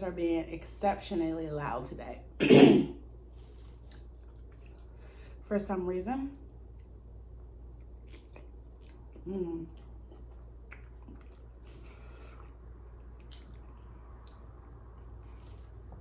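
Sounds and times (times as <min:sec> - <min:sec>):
wet chewing and lip smacks: 0:03.4 - 0:05.0, 0:06.7 - 0:15.6.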